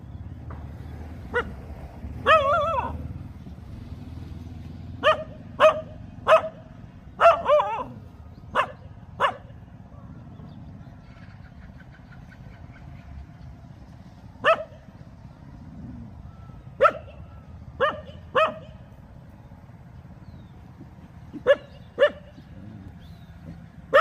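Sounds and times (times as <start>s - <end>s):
dog barking: 1.3s - 1.6s, 2.2s - 3.1s, 5.0s - 9.6s, 14.4s - 14.9s, 16.8s - 18.9s, 21.3s - 22.9s.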